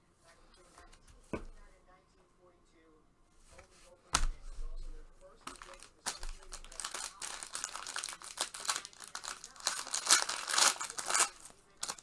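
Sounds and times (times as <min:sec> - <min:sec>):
plastic packaging crinkling: 0:05.2 - 0:12.0.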